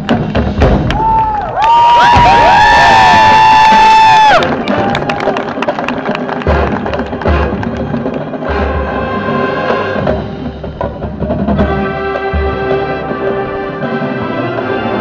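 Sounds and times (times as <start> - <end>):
bass drum and timpani hits: 0.0 - 1.4, 2.0 - 5.8, 6.4 - 15.0
held brass chord: 4.4 - 10.5, 11.6 - 15.0.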